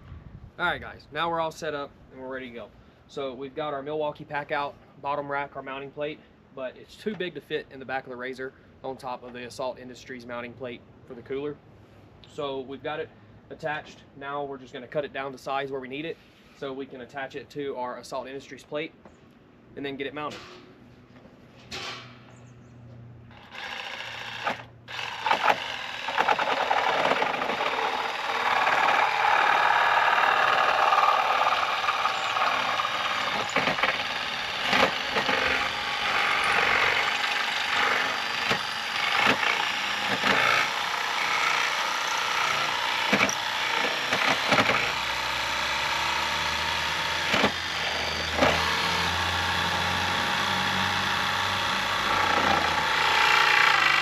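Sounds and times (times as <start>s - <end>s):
power tool cutting: 23.3s - 54.0s.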